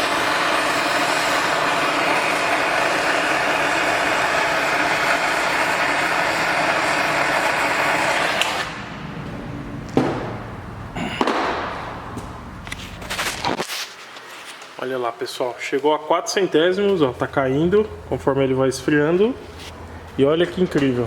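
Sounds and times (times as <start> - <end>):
gas blowtorch flame roaring: 0.0 - 13.6.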